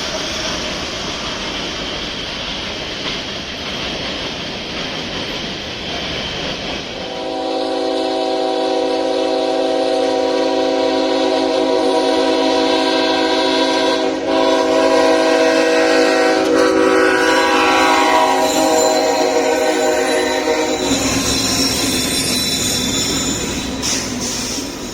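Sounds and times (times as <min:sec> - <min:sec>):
train running: 0:00.0 - 0:24.9
locomotive air horn: 0:07.1 - 0:21.4.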